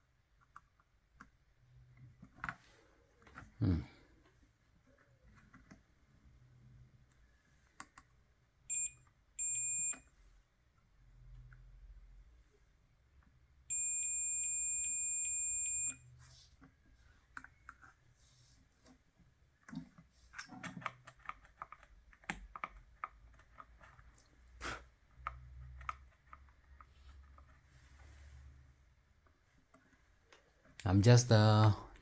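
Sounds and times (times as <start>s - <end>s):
multimeter high beep: 8.7s - 10.0s, 13.7s - 16.0s
test probes clicking and tapping: 8.7s - 10.0s, 13.7s - 16.0s.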